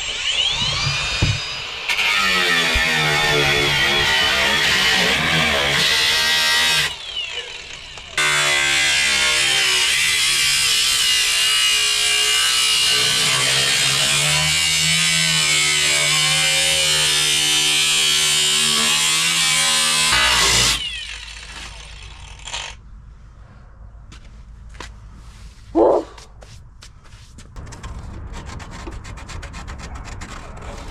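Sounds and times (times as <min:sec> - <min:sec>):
power tool cutting sheet metal: 0:00.0 - 0:22.8.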